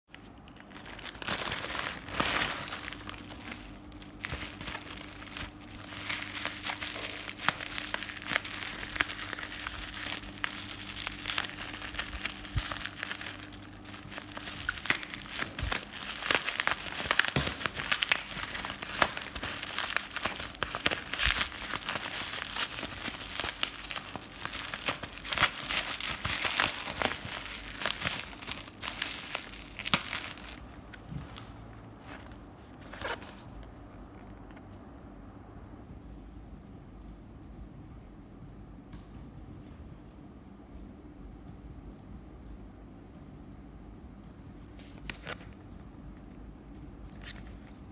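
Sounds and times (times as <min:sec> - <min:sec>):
plastic packaging crinkling: 0:00.1 - 0:34.6, 0:44.7 - 0:45.8, 0:47.0 - 0:47.9.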